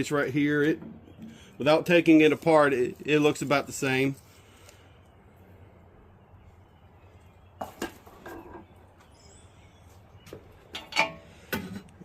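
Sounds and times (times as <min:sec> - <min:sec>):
faint high bird chirp: 0:04.5 - 0:11.5.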